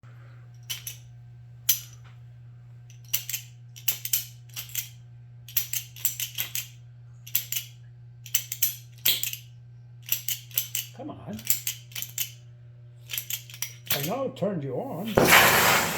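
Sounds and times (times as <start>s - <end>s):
metallic clicks and clinks: 0.6s - 1.0s, 2.9s - 6.7s, 10.0s - 12.4s, 13.1s - 14.1s.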